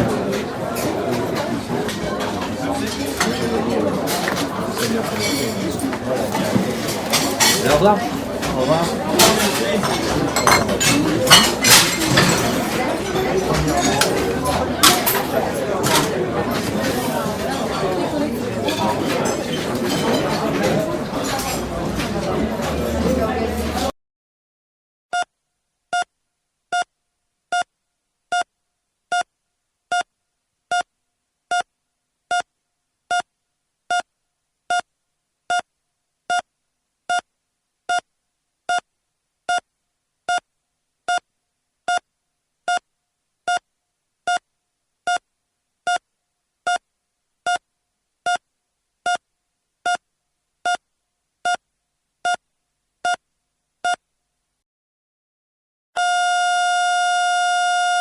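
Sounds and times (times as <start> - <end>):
short electronic beeps: 56.0 - 58.0.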